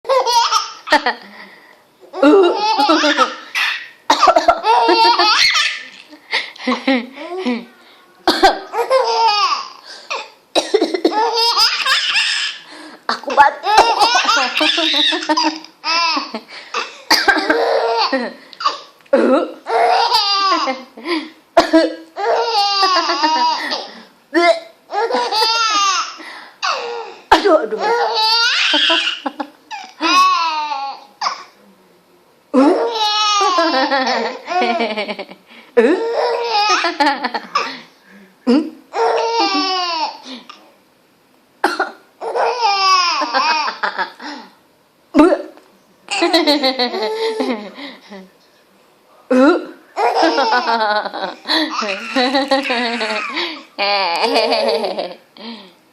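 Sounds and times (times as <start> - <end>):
baby giggling: 0.1 - 1.2, 2.1 - 7.7, 8.4 - 10.3, 11.0 - 18.9, 19.6 - 20.9, 22.2 - 27.1, 27.8 - 31.4, 32.6 - 35.2, 35.8 - 37.7, 38.9 - 40.2, 42.2 - 44.2, 50.0 - 55.2
high-pitched laughter: 2.2 - 3.8, 4.4 - 6.1, 13.3 - 16.4
person coughing: 8.3 - 8.8, 10.1 - 11.2, 16.7 - 17.6, 19.1 - 19.6, 21.6 - 22.1, 27.3 - 27.9, 41.6 - 42.0.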